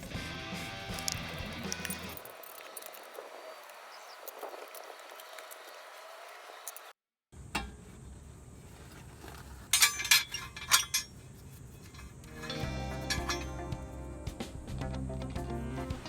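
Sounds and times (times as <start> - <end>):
metal tools clinking: 1.0 - 3.2, 9.2 - 14.0.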